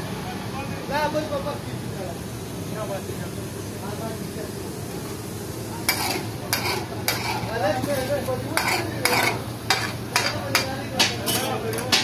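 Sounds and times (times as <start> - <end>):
food sizzling in oil: 2.2 - 12.0
metal spatula scraping a wok: 5.8 - 11.9.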